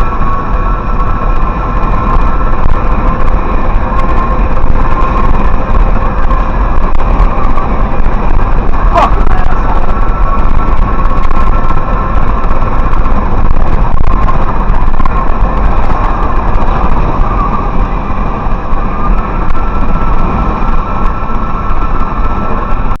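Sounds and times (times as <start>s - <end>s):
constant whine: 0.0s - 23.0s
truck engine and road noise: 0.0s - 23.0s.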